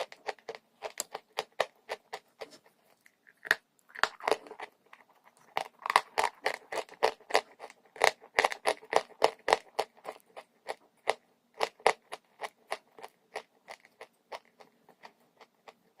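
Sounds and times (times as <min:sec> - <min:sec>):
chalk crunching being chewed: 0:00.0 - 0:16.0.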